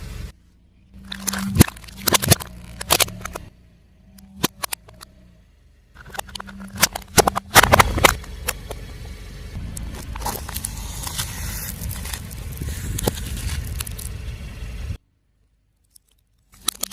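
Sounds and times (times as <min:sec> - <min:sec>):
tyre crushing brittle objects: 0:01.0 - 0:03.5, 0:06.0 - 0:08.7, 0:09.8 - 0:14.2, 0:15.9 - 0:16.9.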